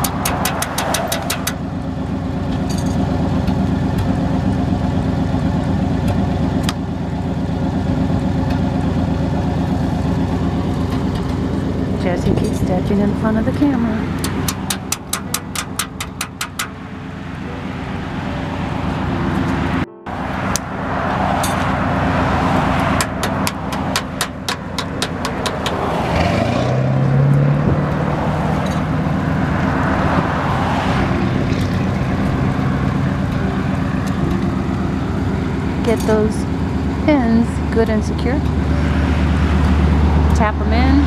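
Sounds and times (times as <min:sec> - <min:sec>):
roadside vehicle noise: 0:00.0 - 0:41.0
engine rising in pitch: 0:16.8 - 0:41.0.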